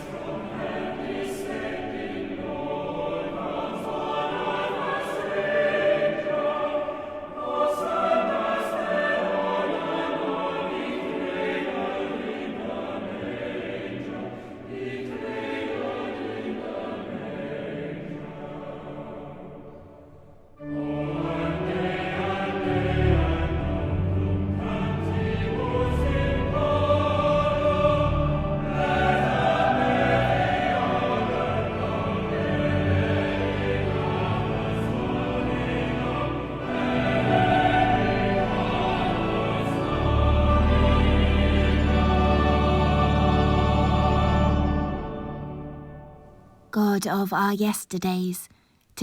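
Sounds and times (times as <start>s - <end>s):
choir singing a carol: 0.0s - 46.9s.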